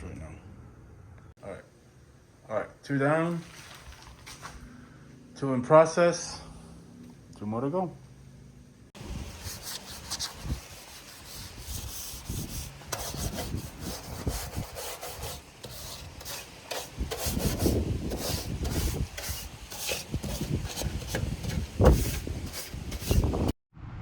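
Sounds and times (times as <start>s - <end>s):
hand rubbing a surface: 9.0s - 23.5s.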